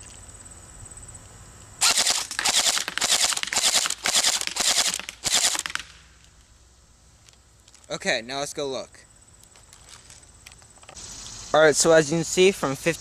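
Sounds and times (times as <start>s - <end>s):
airsoft rifle firing bursts: 1.8s - 6.0s.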